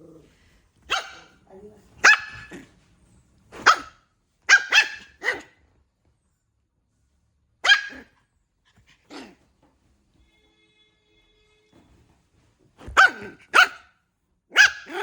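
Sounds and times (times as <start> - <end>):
puppy yapping: 3.6 - 5.5, 7.6 - 8.1, 12.9 - 13.9, 14.5 - 15.0.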